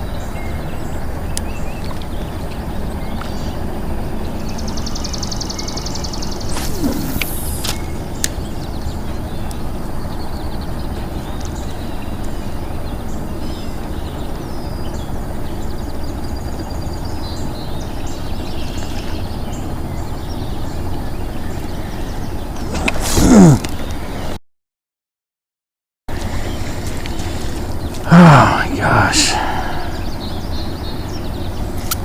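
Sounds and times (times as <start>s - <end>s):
low rumbling background noise: 0.0s - 24.4s, 26.1s - 32.0s
faint bird chirps: 3.0s - 23.9s.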